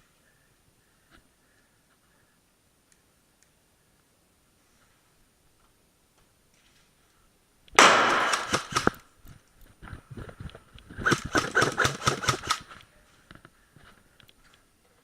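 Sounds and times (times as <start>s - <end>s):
airsoft guns firing bursts: 7.8s - 9.0s, 11.0s - 12.8s.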